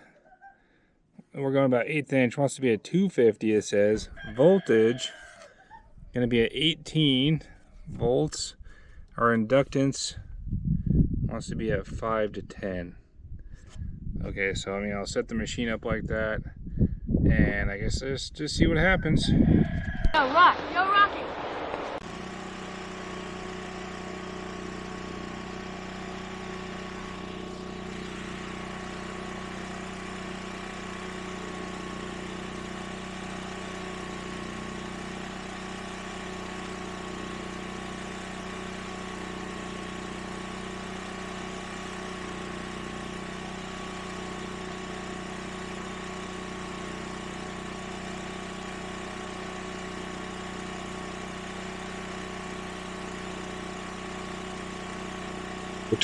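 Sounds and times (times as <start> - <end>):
generator engine humming: 6.2 - 10.1, 20.2 - 56.0.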